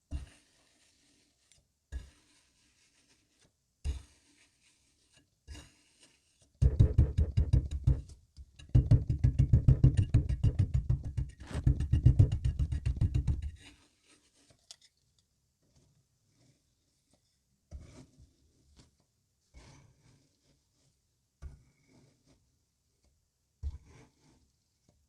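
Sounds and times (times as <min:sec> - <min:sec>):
soft knocks: 0:06.6 - 0:13.6.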